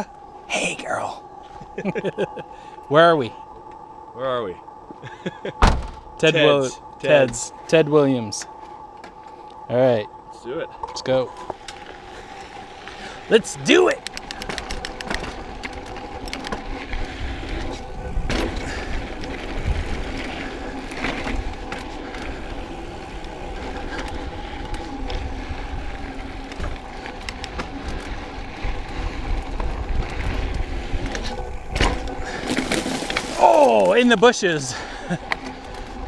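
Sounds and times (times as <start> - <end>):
steady hum: 0.0 - 36.0
wind: 0.0 - 36.0
bike tyres rumbling on dirt: 11.5 - 36.0
bike rattling and knocking: 14.0 - 16.7.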